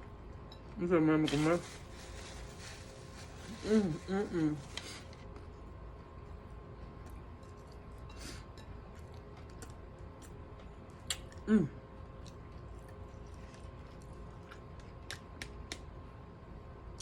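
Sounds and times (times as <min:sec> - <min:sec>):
mouth chewing and smacking: 0:09.0 - 0:11.5, 0:12.2 - 0:15.9.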